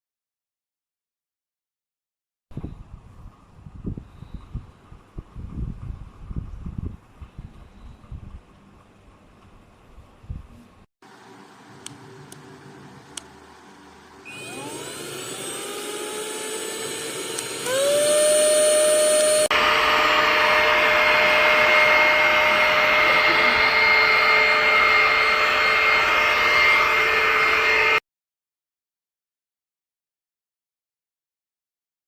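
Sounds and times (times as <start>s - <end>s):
handheld vacuum cleaner whine: 14.2s - 28.0s.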